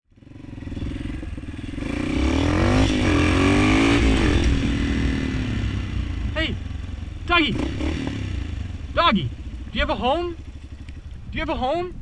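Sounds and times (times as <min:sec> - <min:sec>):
motorcycle engine revving: 0:00.1 - 0:12.0.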